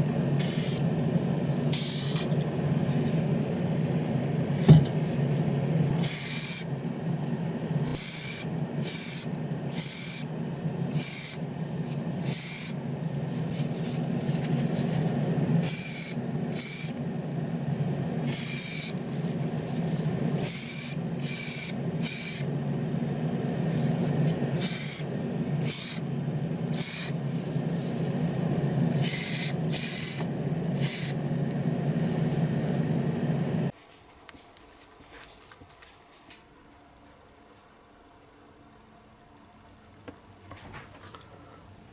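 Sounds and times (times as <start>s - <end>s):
air compressor running: 0.0s - 3.5s, 4.5s - 7.2s, 7.8s - 33.7s
short bursts of spraying air: 0.4s - 0.8s, 1.7s - 2.3s, 6.0s - 6.7s, 7.9s - 10.3s, 10.9s - 11.4s, 12.2s - 12.8s, 15.6s - 17.0s, 18.2s - 19.0s, 20.4s - 22.5s, 24.6s - 26.0s, 26.7s - 27.2s, 28.9s - 31.2s.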